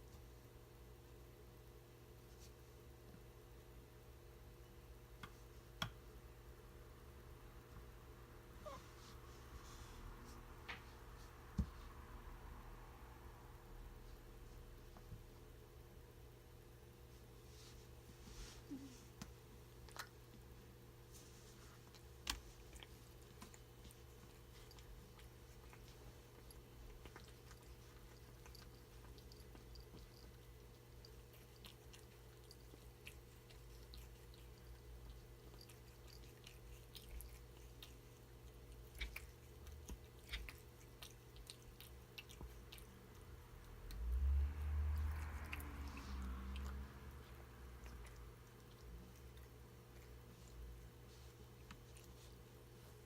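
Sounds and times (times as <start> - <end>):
steady low hum: 0.0 - 53.0
faint small clicks and rustles: 17.5 - 44.0.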